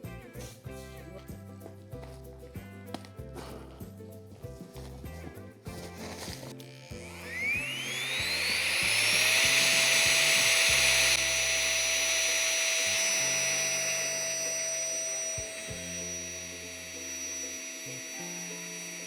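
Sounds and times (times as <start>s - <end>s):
background music: 0.0s - 19.0s
small electric motor whining: 5.7s - 19.0s.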